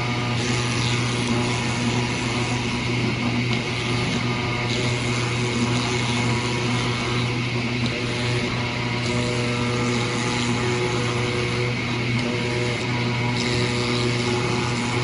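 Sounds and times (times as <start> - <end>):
cutting machine humming: 0.0 - 15.0.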